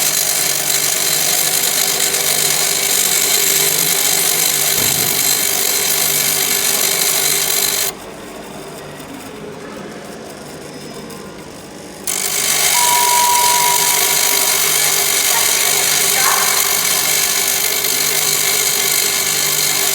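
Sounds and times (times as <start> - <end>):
grinder wheel grinding hiss: 0.0 - 7.9, 12.1 - 19.9
grinder running: 0.0 - 8.0, 12.1 - 19.9.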